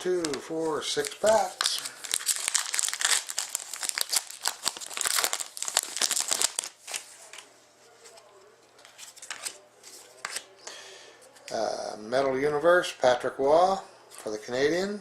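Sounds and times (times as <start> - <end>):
foil wrapper tearing and crinkling: 1.0 - 7.1.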